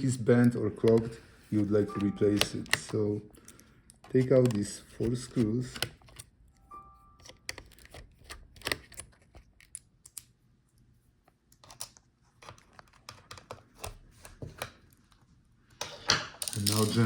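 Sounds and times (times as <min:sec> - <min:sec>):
screws being handled: 0:16.4 - 0:17.0.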